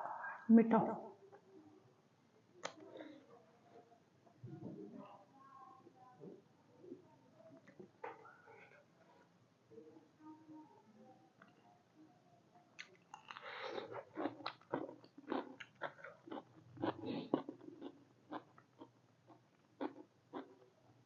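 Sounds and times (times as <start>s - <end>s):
person chewing crunchy food: 12.8s - 20.7s.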